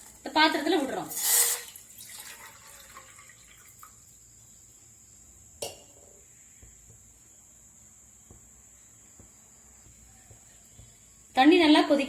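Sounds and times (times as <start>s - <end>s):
water dripping in a pot: 1.2s - 4.3s.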